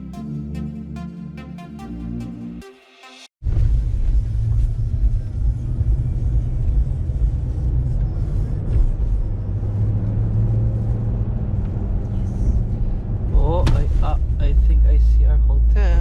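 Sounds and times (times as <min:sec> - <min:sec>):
pickup truck engine rumble: 0:03.4 - 0:16.0
road noise: 0:03.4 - 0:16.0.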